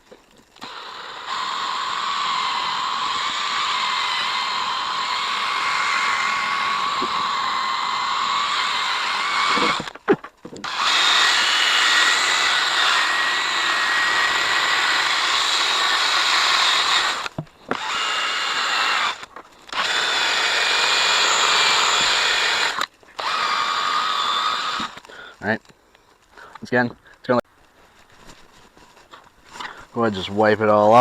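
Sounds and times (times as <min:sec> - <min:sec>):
electric drill on plastic lens: 0:00.6 - 0:10.0, 0:10.6 - 0:25.1.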